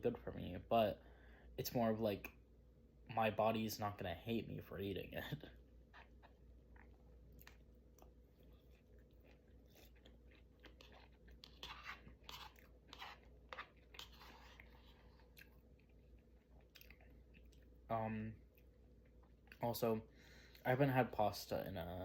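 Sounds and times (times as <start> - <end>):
person chewing crunchy food: 5.8 - 17.8.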